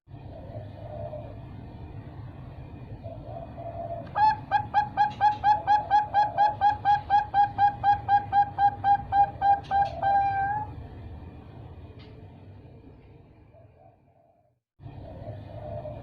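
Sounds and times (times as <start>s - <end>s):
dove chick cooing: 0.2s - 1.5s, 3.0s - 10.8s, 13.5s - 16.0s.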